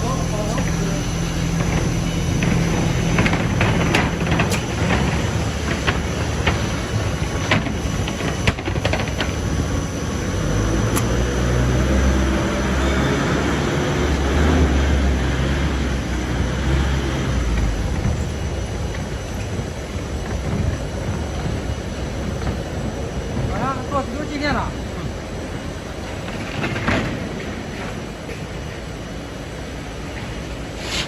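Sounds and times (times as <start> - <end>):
sanding machine rattle and hum: 0.0 - 10.9
sharp clicks and knocks: 1.5 - 9.8.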